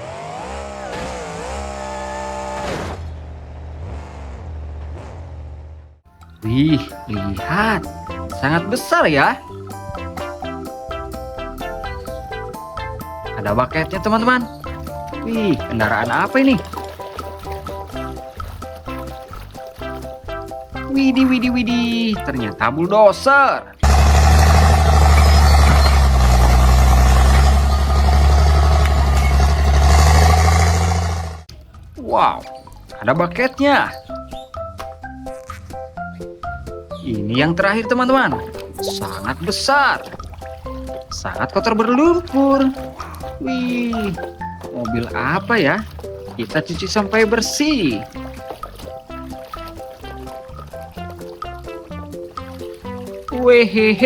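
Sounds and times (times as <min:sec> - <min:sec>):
monster truck engine revving: 0:00.0 - 0:06.0, 0:23.8 - 0:31.5.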